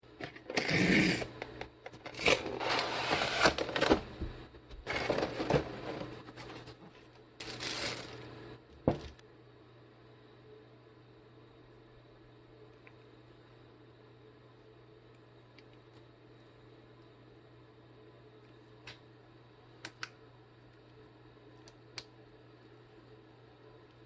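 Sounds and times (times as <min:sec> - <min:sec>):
packaging rustling and crinkling: 0:07.4 - 0:08.3.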